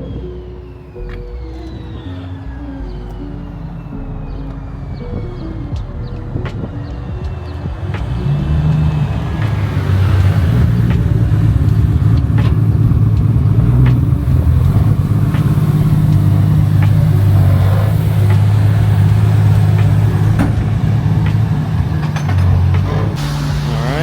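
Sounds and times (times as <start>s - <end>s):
car engine running: 0.0s - 24.0s.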